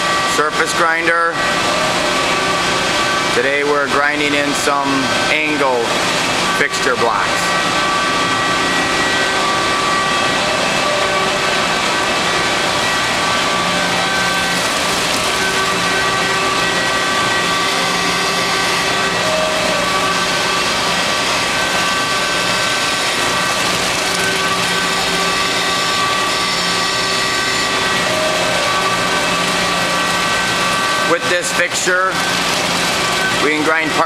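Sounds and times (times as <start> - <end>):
surface grinder grinding steel: 0.0 - 34.0.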